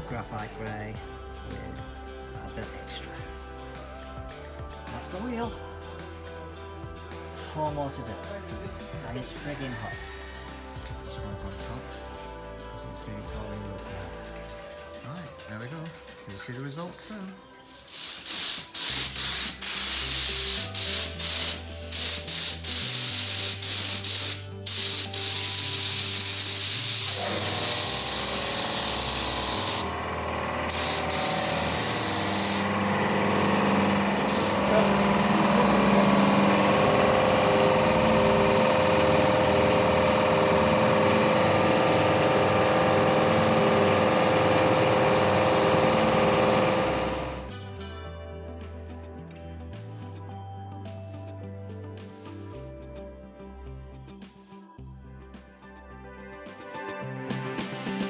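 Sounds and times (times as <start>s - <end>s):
background music: 0.0s - 58.0s
spray paint hissing: 17.7s - 47.5s.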